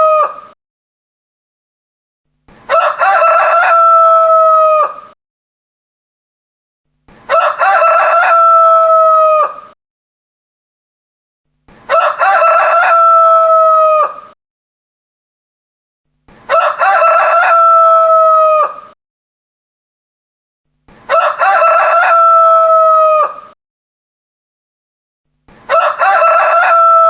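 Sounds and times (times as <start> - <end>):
rooster crowing: 0.0 - 0.5, 2.7 - 5.2, 7.3 - 9.8, 11.9 - 14.4, 16.5 - 19.0, 21.1 - 23.6, 25.7 - 27.0.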